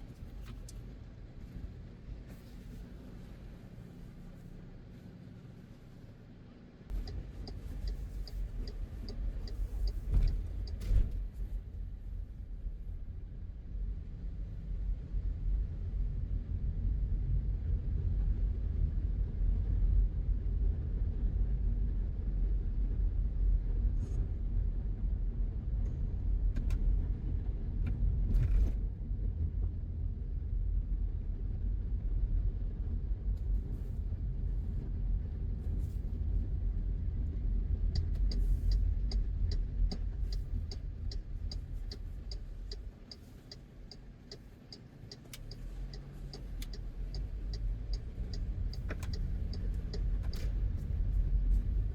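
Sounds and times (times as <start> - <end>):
road and engine rumble: 0.0 - 51.9
turn signal ticking: 6.9 - 11.2, 37.9 - 51.9.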